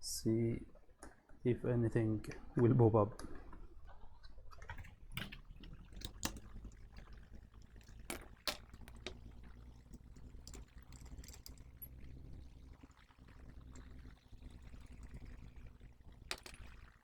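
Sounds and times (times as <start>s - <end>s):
steady low hum: 4.8s - 17.0s.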